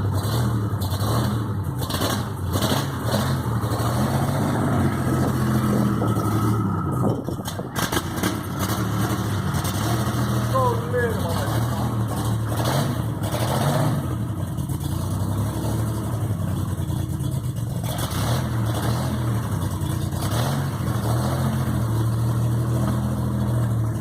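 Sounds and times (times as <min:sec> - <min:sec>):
car engine idling: 0:00.0 - 0:24.0.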